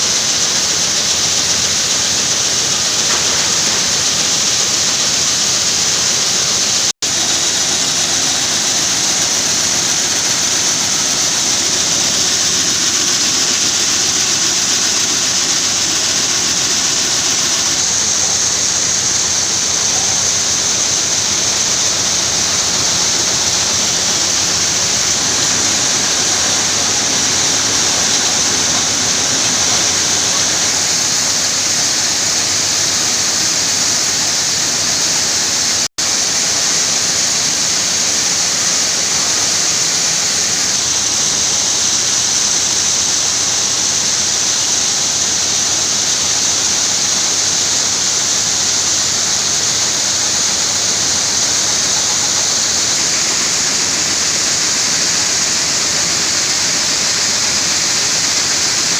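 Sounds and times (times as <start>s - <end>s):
beans rattling in sorting machine: 0.0s - 32.6s.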